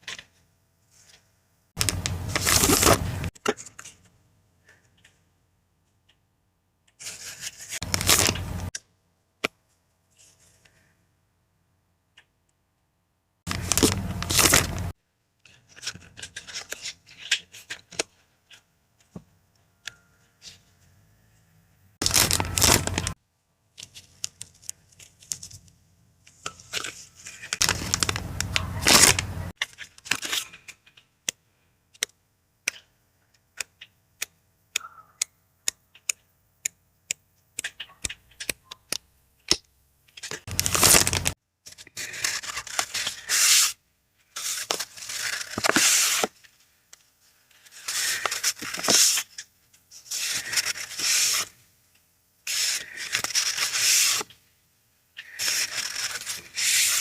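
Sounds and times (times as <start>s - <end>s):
packaging rustling: 1.8s - 3.1s, 7.8s - 8.7s, 13.5s - 14.9s, 22.0s - 23.2s, 26.8s - 29.5s, 40.5s - 41.4s
paper tearing: 1.8s - 3.3s, 7.0s - 8.7s, 13.5s - 14.9s, 22.0s - 23.2s, 26.8s - 29.5s, 40.3s - 41.4s, 42.0s - 43.8s, 44.4s - 46.3s, 52.5s - 54.3s, 55.2s - 57.0s.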